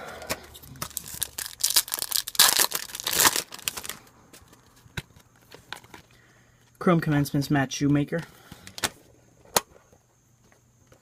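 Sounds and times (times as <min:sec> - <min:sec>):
foil wrapper tearing and crinkling: 0:00.6 - 0:04.0.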